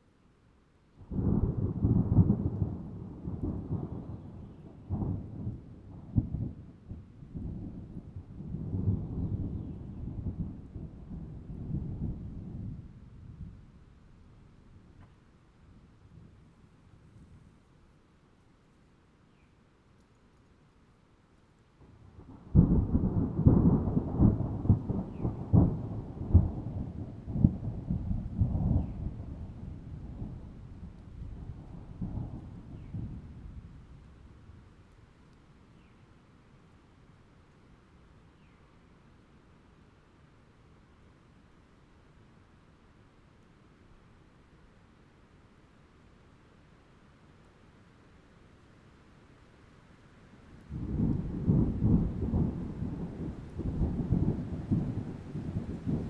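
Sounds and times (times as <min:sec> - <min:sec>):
rain: 0:00.0 - 0:56.0
thunder rumbling: 0:22.0 - 0:34.4, 0:50.7 - 0:56.0.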